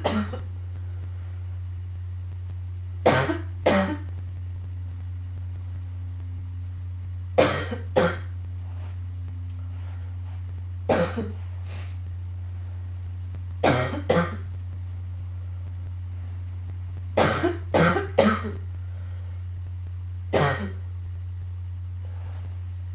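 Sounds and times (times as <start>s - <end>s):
girl coughing: 0.0s - 0.4s, 3.1s - 4.1s, 7.4s - 8.3s, 10.9s - 11.4s, 17.2s - 18.6s, 20.4s - 20.8s
low hum: 0.0s - 22.9s.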